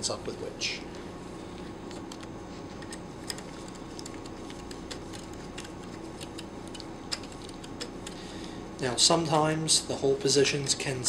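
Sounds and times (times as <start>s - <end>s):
steady room hum: 0.0s - 11.0s
metal parts clicking and tapping: 2.8s - 8.2s.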